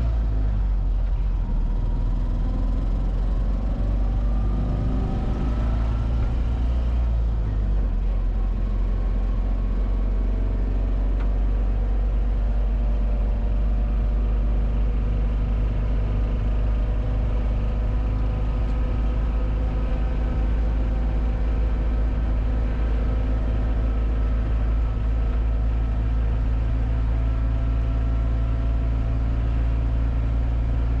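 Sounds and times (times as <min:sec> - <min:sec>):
low rumble: 0:14.0 - 0:31.0.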